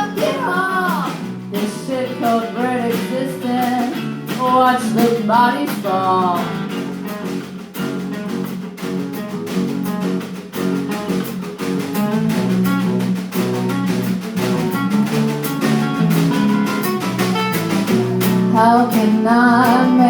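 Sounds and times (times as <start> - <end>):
rock band playing: 0.0 - 20.0
sharp drum hits: 6.9 - 20.0.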